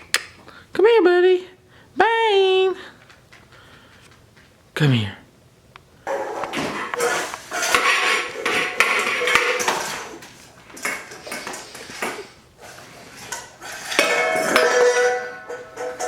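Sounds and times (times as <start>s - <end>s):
dishware clattering: 6.1s - 16.0s.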